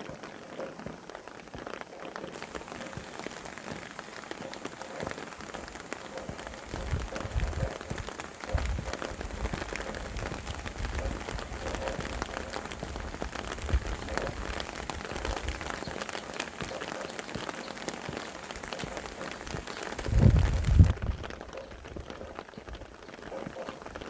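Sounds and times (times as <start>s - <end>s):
steady rain falling: 0.0s - 24.0s
wind gusting: 2.5s - 16.8s, 18.3s - 22.9s.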